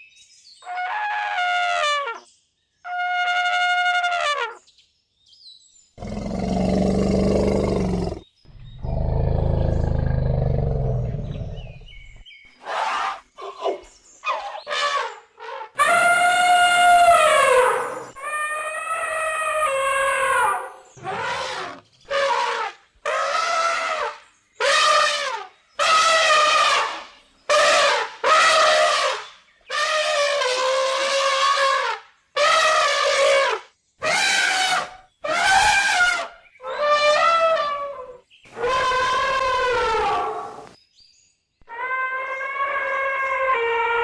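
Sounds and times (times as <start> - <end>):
elephant trumpeting: 14.3 - 40.7.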